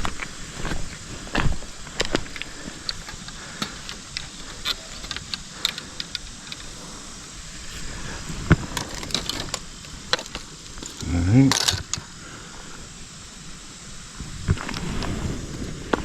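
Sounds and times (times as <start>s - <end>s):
fishing gear clicking and knocking: 2.9s - 6.8s.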